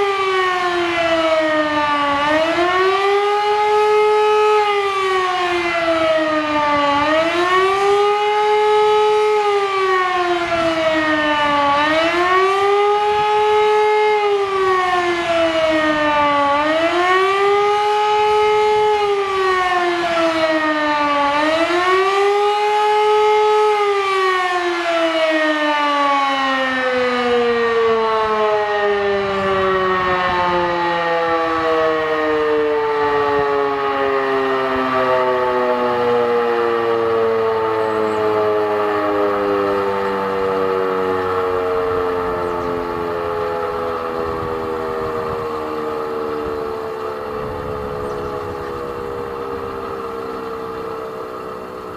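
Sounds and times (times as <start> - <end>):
siren wailing: 0.0 - 51.9.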